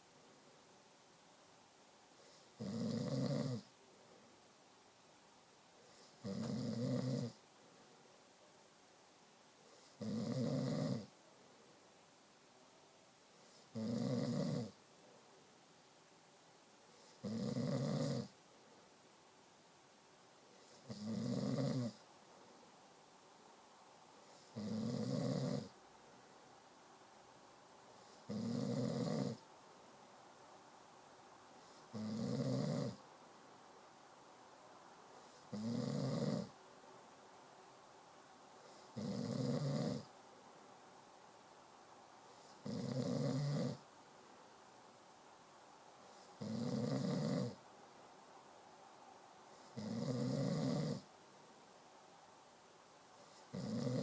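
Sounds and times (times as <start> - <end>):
person snoring: 2.2 - 3.7, 5.9 - 7.4, 9.8 - 11.1, 13.5 - 14.8, 17.0 - 18.3, 20.7 - 22.0, 24.4 - 25.7, 28.1 - 29.4, 31.9 - 33.0, 35.3 - 36.5, 38.8 - 40.1, 42.4 - 43.8, 46.4 - 47.6, 49.7 - 51.0, 53.3 - 54.0.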